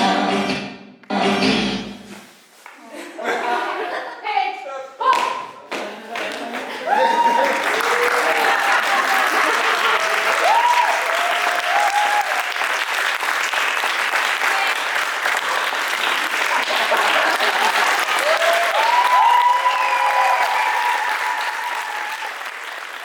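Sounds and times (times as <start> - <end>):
audience applauding: 5.8 - 23.0
whooping cheers: 6.8 - 12.8, 16.5 - 22.6.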